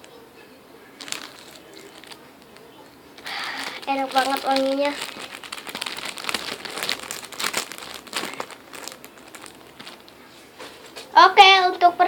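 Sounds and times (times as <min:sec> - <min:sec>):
plastic packaging crinkling: 0:00.9 - 0:10.2.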